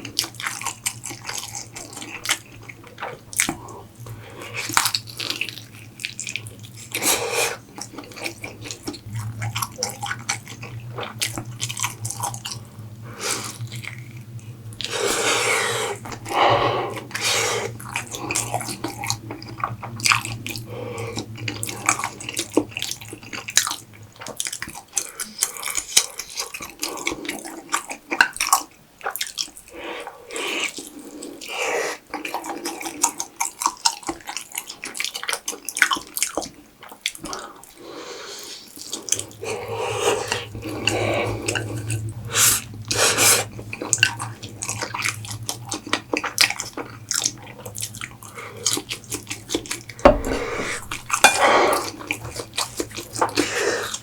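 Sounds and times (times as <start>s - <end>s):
wet squelching chewing: 30.5s - 54.0s.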